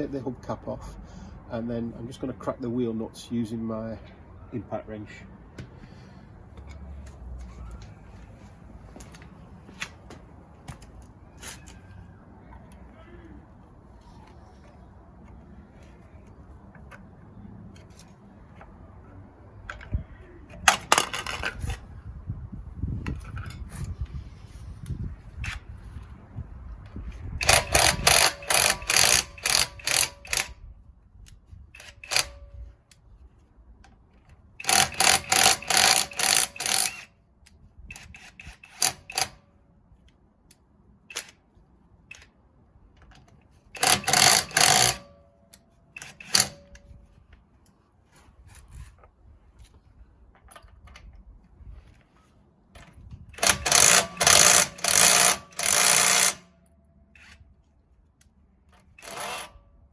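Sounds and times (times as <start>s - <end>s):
impact wrench hammering: 27.4s - 30.5s, 34.6s - 37.0s, 43.8s - 45.2s, 53.4s - 56.5s.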